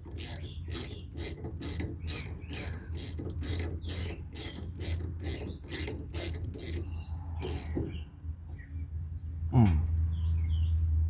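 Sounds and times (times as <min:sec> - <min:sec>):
raspy ratchet strokes: 0:00.0 - 0:07.9.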